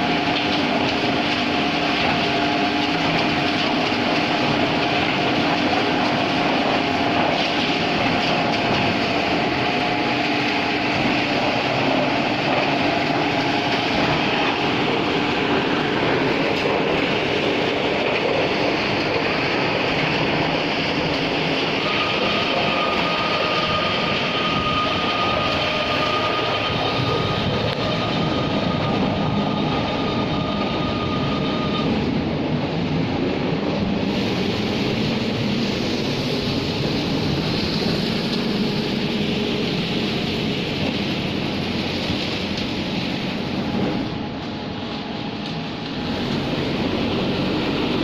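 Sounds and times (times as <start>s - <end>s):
thin high whine: 0.0s - 32.1s
concrete mixer truck running: 0.0s - 48.0s.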